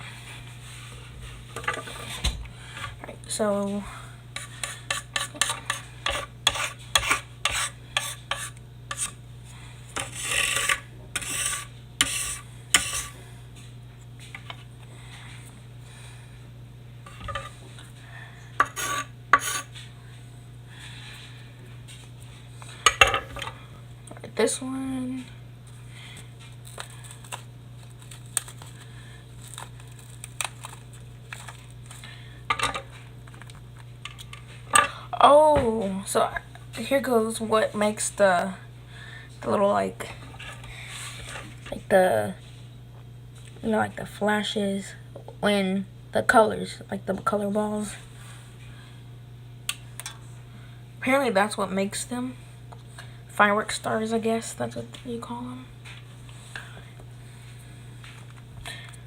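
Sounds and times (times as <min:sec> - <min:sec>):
steady low hum: 0:00.0 - 0:59.0
paper crinkling: 0:26.6 - 0:32.0.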